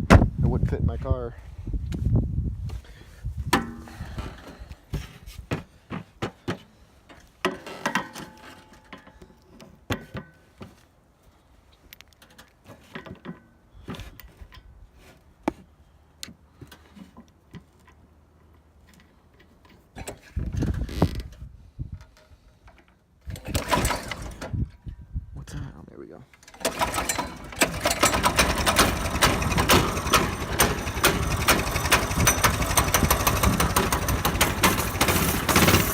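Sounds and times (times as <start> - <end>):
metal clatter: 26.4 - 35.9.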